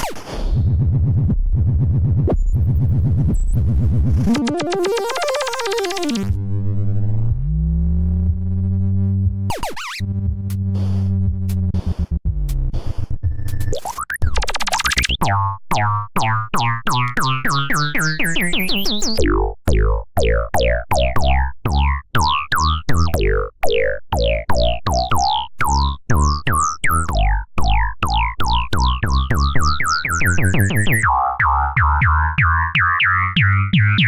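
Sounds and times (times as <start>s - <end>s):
pulsing bass: 0.5s - 34.0s
rising synth sweep: 4.2s - 8.9s
sharp rhythmic clicks: 4.3s - 6.3s, 13.4s - 32.1s
gliding electronic tones: 4.3s - 6.4s.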